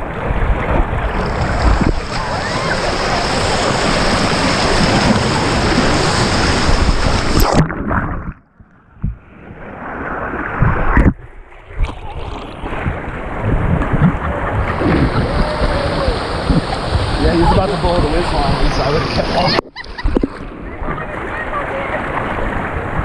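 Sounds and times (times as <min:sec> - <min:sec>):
sharp water splashes: 0:00.0 - 0:08.6
rushing water: 0:00.0 - 0:23.0
wind on microphone: 0:00.0 - 0:23.0.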